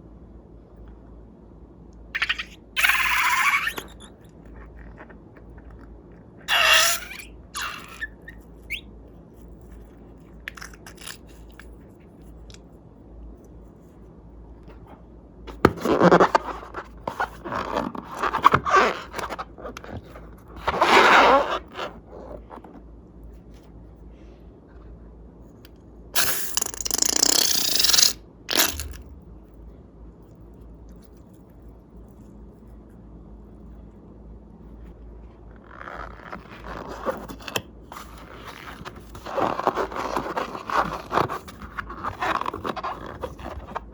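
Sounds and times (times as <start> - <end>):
slime scraping and crunching: 10.5 - 11.7, 26.2 - 29.1, 35.7 - 43.9.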